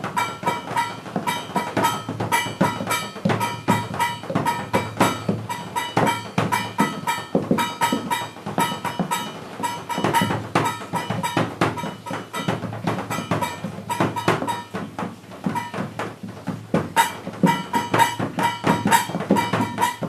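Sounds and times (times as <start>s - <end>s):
fast busy percussion: 0.0s - 20.0s.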